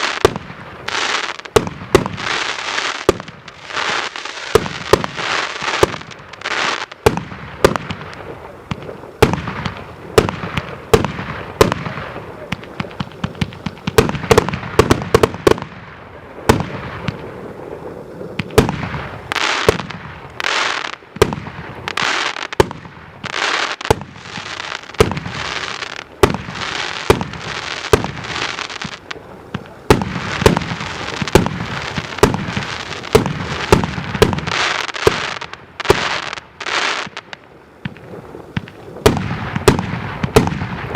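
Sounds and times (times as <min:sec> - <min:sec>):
firework hissing: 0:00.0 - 0:15.6, 0:16.3 - 0:40.9
firework bangs: 0:00.0 - 0:40.9.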